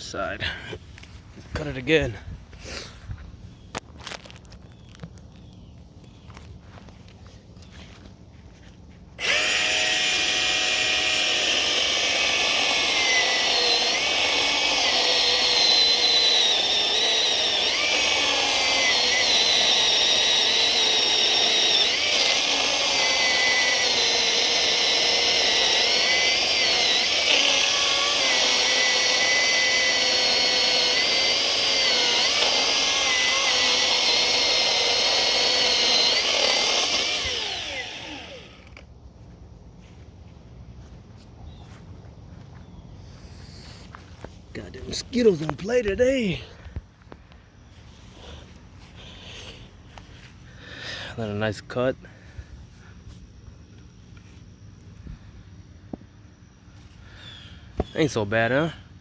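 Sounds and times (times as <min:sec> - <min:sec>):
chainsaw cutting through log: 0:09.2 - 0:38.8.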